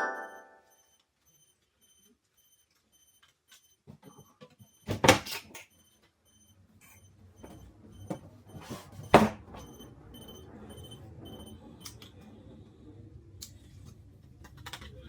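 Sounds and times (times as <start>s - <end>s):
alarm clock beeping: 0.0s - 3.1s.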